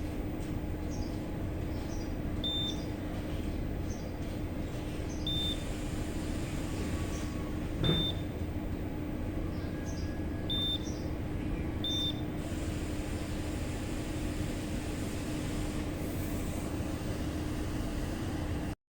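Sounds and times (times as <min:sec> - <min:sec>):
machine electrical hum: 0:00.0 - 0:18.8
short high beeps: 0:11.9 - 0:12.2.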